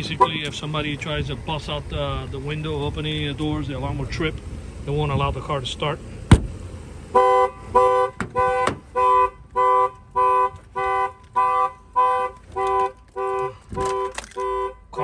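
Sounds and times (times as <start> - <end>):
car alarm horn blasts: 7.2 - 15.0.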